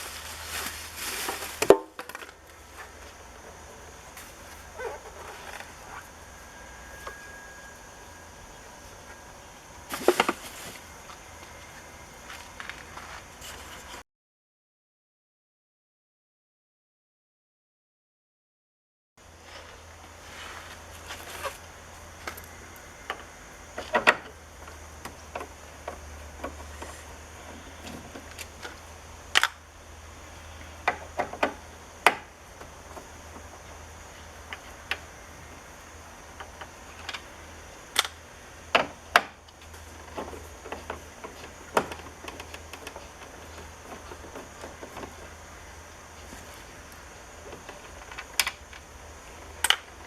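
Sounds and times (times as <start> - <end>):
low hum: 0.0 - 14.0
sharp clicks and knocks: 38.0 - 45.3.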